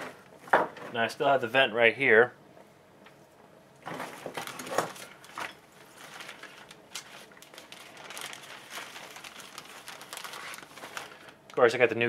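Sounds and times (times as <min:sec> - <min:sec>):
packaging crinkling: 0:04.2 - 0:11.6.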